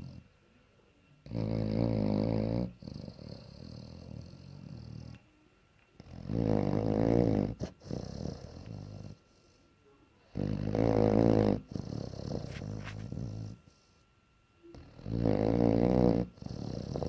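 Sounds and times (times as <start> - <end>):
dog snoring loudly: 0.0 - 0.3, 1.2 - 5.2, 6.0 - 9.2, 10.3 - 13.9, 14.8 - 17.0
soft breath: 9.1 - 10.0.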